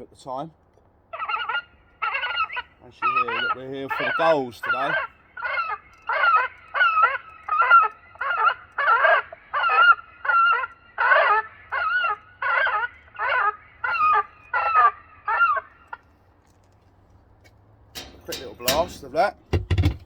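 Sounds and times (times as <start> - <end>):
gull distress calls from loudspeaker: 1.2 - 15.7.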